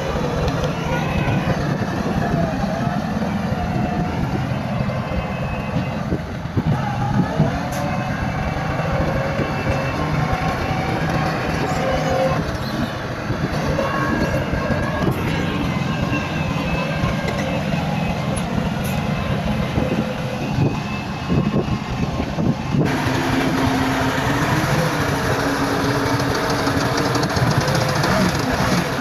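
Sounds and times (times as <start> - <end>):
high squeals: 0.0 - 22.2
heavy diesel machinery running: 0.0 - 29.0.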